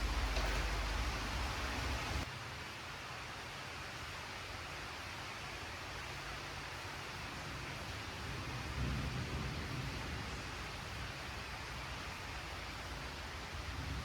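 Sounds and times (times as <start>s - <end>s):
heavy rain hissing: 0.0s - 2.3s.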